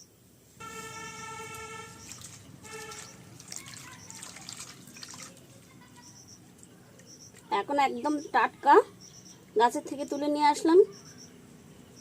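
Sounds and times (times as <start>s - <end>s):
water trickling and splashing: 0.6s - 7.8s.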